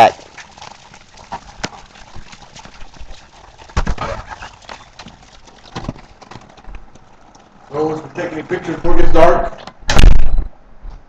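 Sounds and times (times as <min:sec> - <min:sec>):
footsteps: 0:00.0 - 0:09.2
loud thump: 0:09.9 - 0:10.5.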